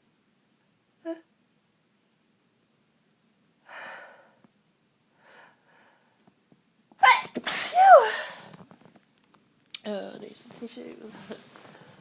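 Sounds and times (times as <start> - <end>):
woman breathing in: 3.6 - 4.4, 5.2 - 6.2
woman sneezing: 7.0 - 8.3.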